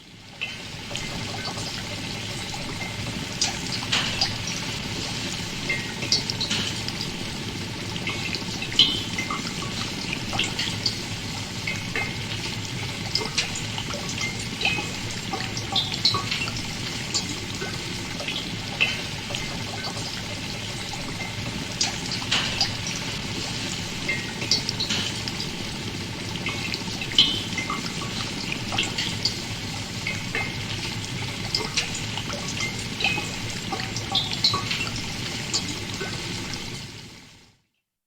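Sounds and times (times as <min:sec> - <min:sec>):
liquid bubbling and gurgling: 0:00.0 - 0:37.5.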